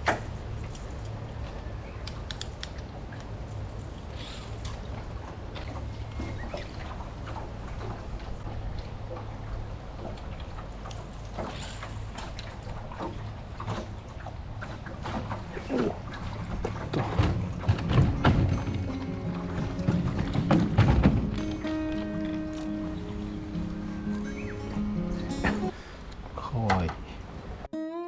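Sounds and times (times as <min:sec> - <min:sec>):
water lapping around a boat: 0:00.0 - 0:26.3
small splashes and knocks: 0:02.1 - 0:22.8.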